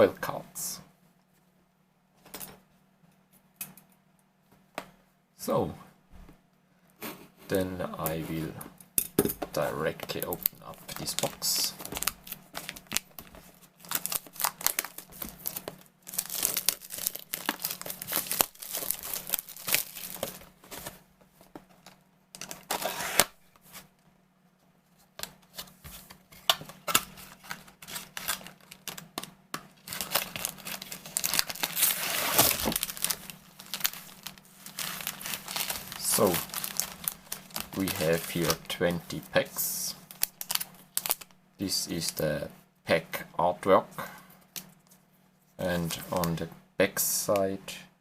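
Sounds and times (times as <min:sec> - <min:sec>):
faint steady hum: 0:00.0 - 0:48.0
wrapping crinkling and tearing: 0:09.6 - 0:21.0, 0:21.8 - 0:23.9, 0:25.5 - 0:41.4.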